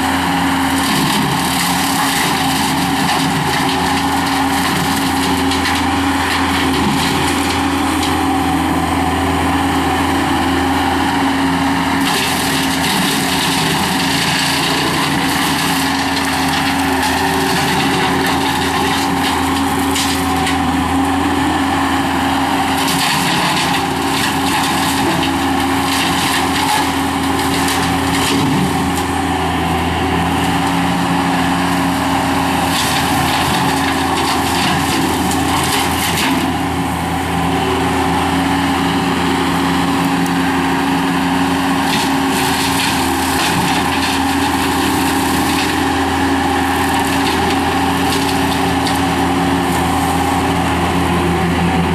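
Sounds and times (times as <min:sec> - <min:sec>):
brush cutter noisy rush: 0:00.0 - 0:51.9
loader engine and hydraulic hum: 0:00.0 - 0:51.9
blade chopping brush and wood: 0:12.0 - 0:20.6, 0:22.8 - 0:29.1, 0:32.6 - 0:36.6, 0:41.8 - 0:50.2.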